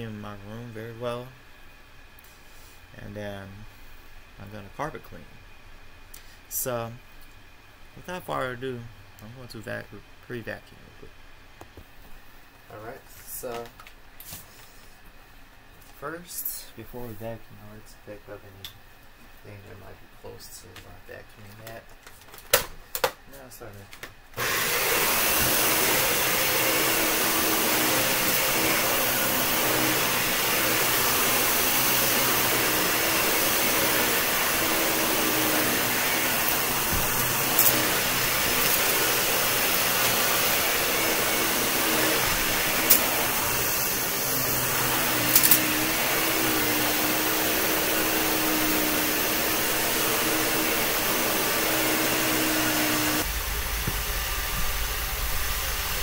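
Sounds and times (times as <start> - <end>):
vacuum cleaner running: 24.4 - 56.0.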